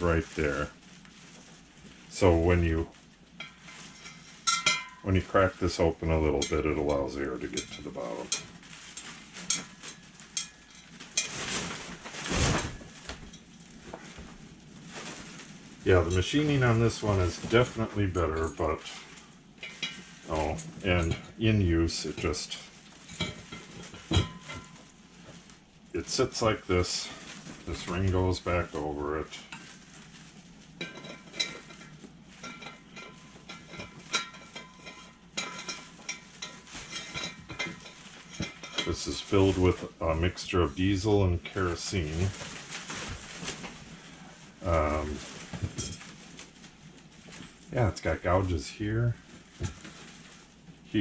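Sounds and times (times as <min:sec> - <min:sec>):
rustling scrape: 0:00.0 - 0:51.0.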